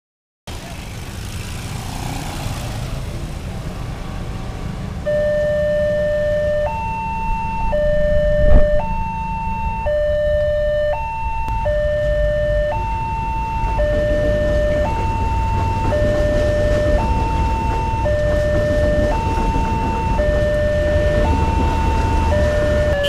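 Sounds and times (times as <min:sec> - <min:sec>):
road traffic rumble: 0:00.5 - 0:23.0
level crossing warning siren: 0:04.6 - 0:23.0.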